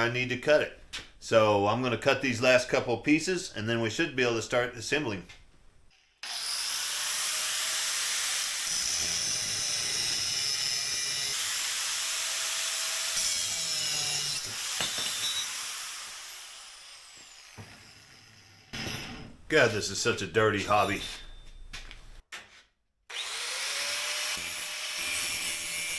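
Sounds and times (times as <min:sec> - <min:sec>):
power saw cutting metal: 0:06.2 - 0:19.3, 0:23.1 - 0:25.9.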